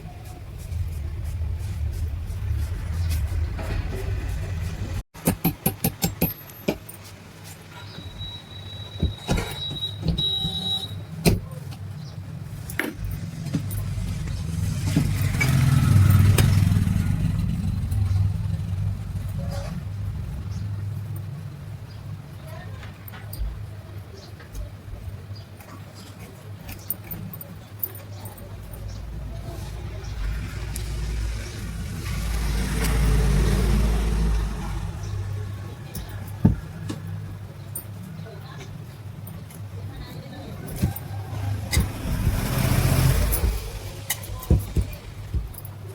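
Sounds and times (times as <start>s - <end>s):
low rumble: 0.0s - 5.1s, 12.2s - 22.3s, 28.3s - 37.9s
handling knocks and clicks: 22.8s - 30.0s, 32.6s - 45.9s.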